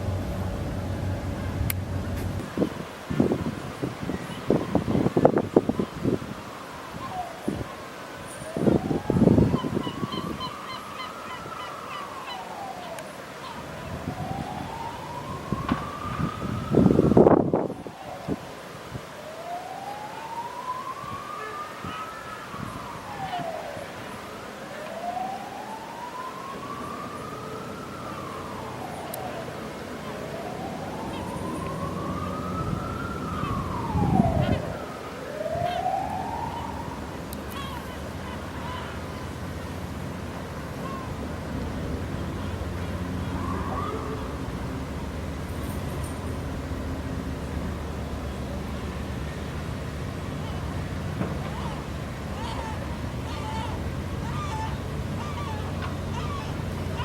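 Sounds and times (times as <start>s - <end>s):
low rumble: 0.0s - 2.4s
emergency siren wailing: 0.0s - 3.4s, 4.0s - 57.0s
wind on microphone: 0.0s - 6.4s, 8.6s - 10.5s, 13.8s - 18.4s, 30.7s - 34.9s.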